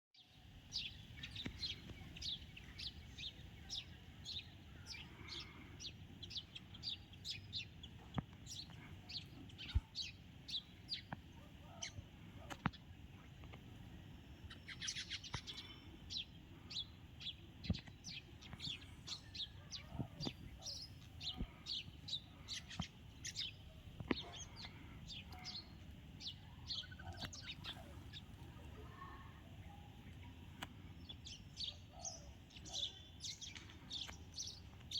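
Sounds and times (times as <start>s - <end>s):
sparrows chirping: 0.2s - 34.9s.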